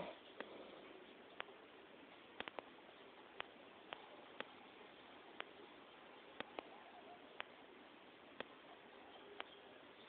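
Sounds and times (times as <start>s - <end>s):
faint steady hiss: 0.0s - 10.0s.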